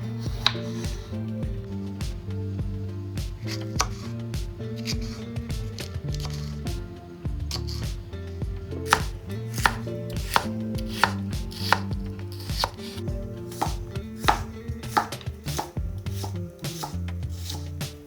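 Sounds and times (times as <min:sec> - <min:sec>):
knife chopping on cutting board: 0:00.3 - 0:01.1, 0:03.3 - 0:04.0, 0:04.8 - 0:06.5, 0:08.9 - 0:17.7.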